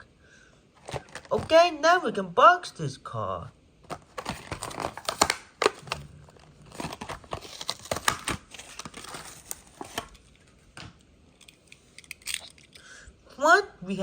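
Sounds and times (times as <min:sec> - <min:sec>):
plastic package crinkling and tearing: 0:00.8 - 0:01.5, 0:03.9 - 0:10.5.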